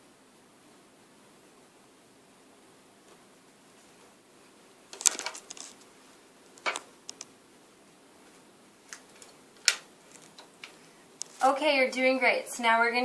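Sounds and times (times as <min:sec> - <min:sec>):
sharp clicks and light knocks: 0:04.9 - 0:05.9, 0:06.5 - 0:07.4, 0:08.2 - 0:11.4.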